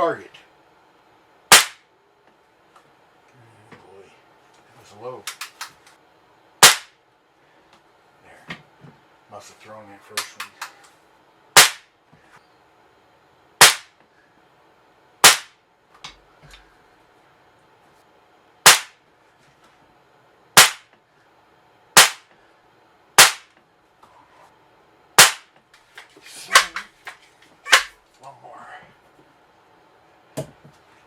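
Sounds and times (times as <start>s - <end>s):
air rifle shots: 1.5s - 1.8s, 6.6s - 7.0s, 11.6s - 11.9s, 13.6s - 14.0s, 15.2s - 15.6s, 18.6s - 19.0s, 20.6s - 20.9s, 22.0s - 22.3s, 23.2s - 23.5s, 25.2s - 25.5s.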